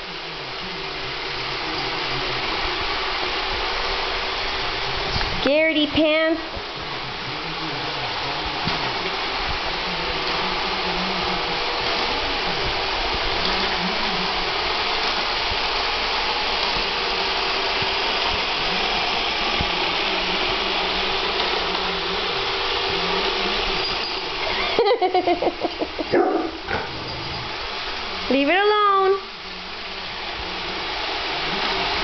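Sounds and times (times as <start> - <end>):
dog barking: 26.1 - 26.9.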